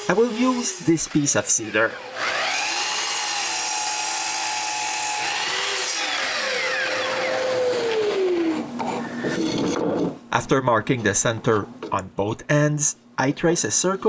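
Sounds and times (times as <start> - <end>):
power tool motor whining: 1.6 - 9.5.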